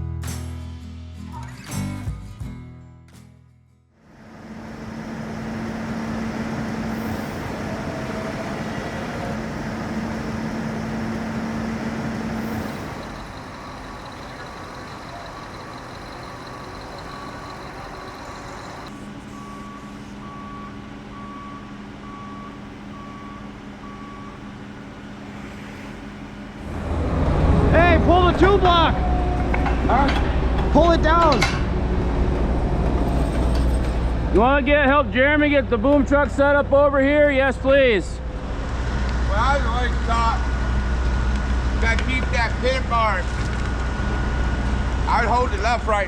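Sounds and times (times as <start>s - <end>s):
heavy diesel machinery running: 4.1s - 46.0s
backup alarm beeping: 5.3s - 24.6s.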